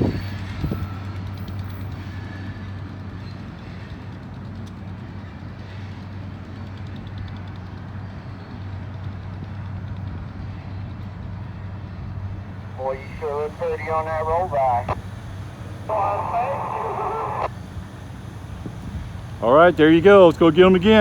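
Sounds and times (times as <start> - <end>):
rumble of rail noise: 9.7 - 21.0
locomotive drone: 12.6 - 21.0.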